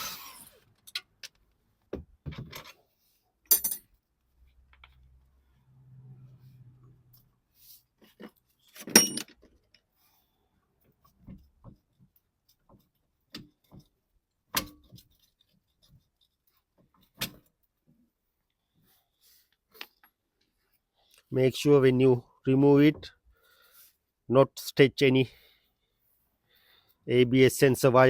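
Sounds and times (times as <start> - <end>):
metal tools clanking on hardware: 3.5 - 3.9, 8.8 - 9.4.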